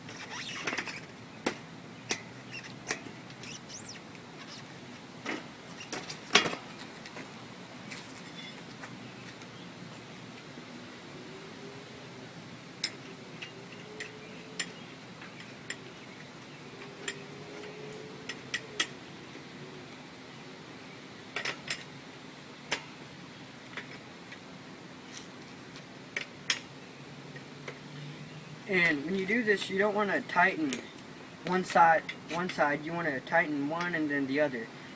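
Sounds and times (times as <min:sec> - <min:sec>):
sharp metallic clicks and knocks: 0:00.6 - 0:04.1, 0:12.8 - 0:15.9, 0:16.8 - 0:19.0, 0:22.7 - 0:22.9.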